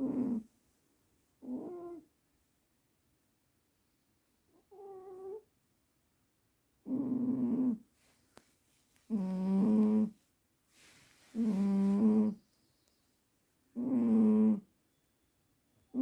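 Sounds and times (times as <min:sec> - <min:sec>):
cat snoring: 0:00.0 - 0:00.5, 0:01.4 - 0:02.0, 0:06.8 - 0:07.8, 0:09.1 - 0:10.2, 0:11.3 - 0:12.4, 0:13.8 - 0:14.7.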